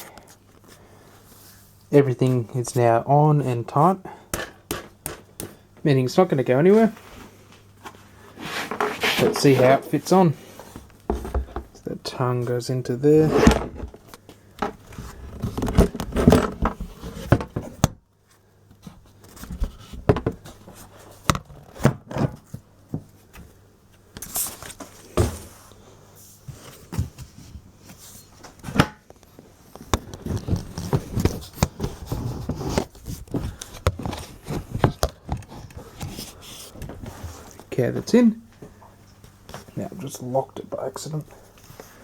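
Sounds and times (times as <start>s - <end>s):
plastic box knocking and scraping: 11.1s - 11.7s, 13.2s - 18.0s.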